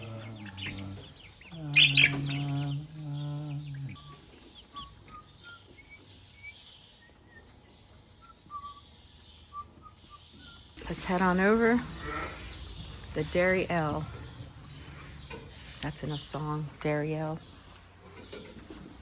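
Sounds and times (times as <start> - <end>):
hens calling: 0.0 - 6.4, 10.8 - 19.0.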